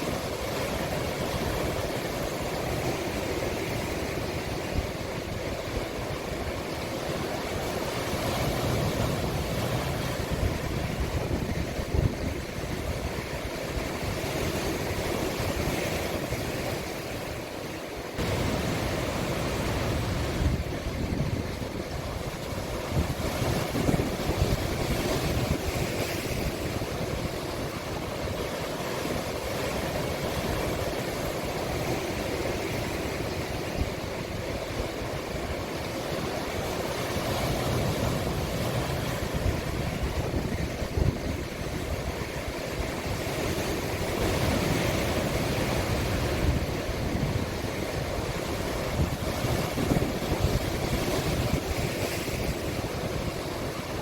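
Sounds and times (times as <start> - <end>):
wind buffeting microphone: 0.0 - 17.3, 18.2 - 54.0
sea waves breaking: 0.0 - 54.0.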